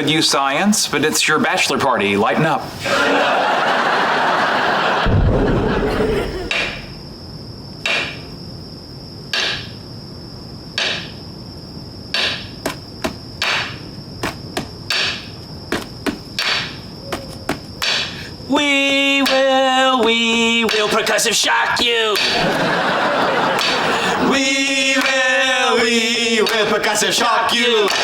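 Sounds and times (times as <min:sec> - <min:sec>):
studio audience laughing: 0:02.8 - 0:06.6, 0:22.3 - 0:24.4.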